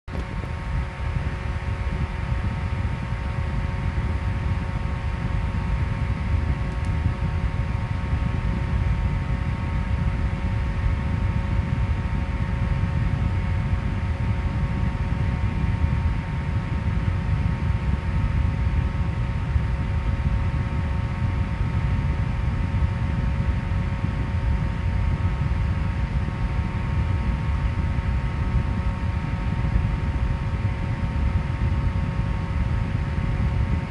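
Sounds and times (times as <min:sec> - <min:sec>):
electric fan running: 0:00.0 - 0:33.9.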